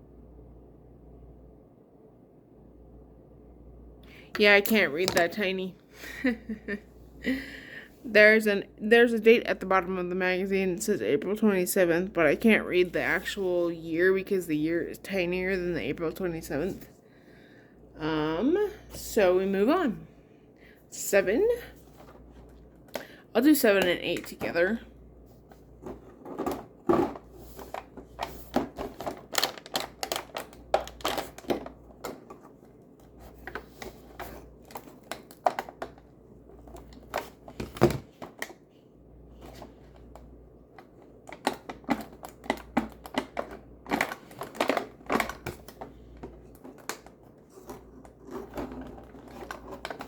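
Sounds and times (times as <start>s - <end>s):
cardboard and plastic packaging crinkling: 25.3s - 38.5s, 39.3s - 50.0s.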